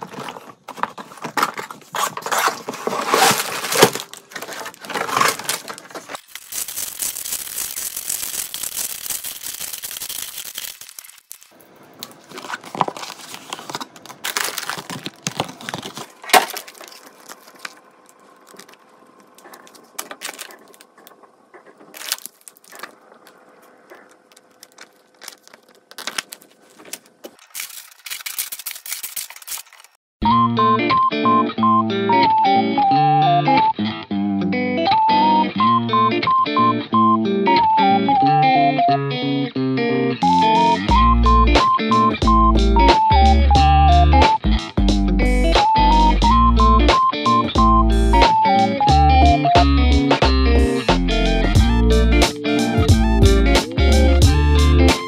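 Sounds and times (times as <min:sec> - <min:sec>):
plastic packaging crinkling: 0:00.0 - 0:30.0.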